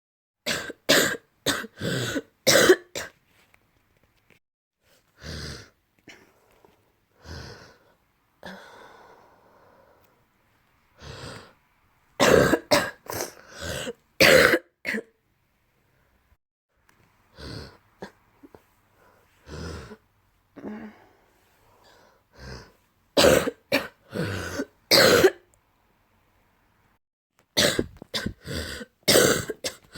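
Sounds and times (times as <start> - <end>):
person coughing with phlegm: 0.5 - 3.2, 12.2 - 15.1, 23.2 - 25.5, 27.6 - 29.9
person breathing: 5.0 - 10.3, 10.9 - 11.6, 18.4 - 20.0, 20.6 - 22.8.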